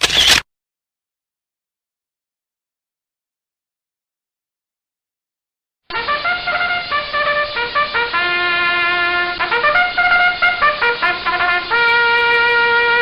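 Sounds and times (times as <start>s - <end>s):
comedic brass tune: 5.9s - 13.0s.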